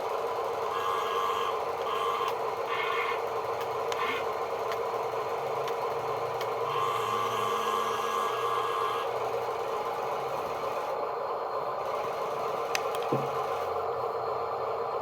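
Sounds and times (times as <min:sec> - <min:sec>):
small electric motors whirring: 0:00.0 - 0:11.0
constant hum: 0:00.0 - 0:15.0.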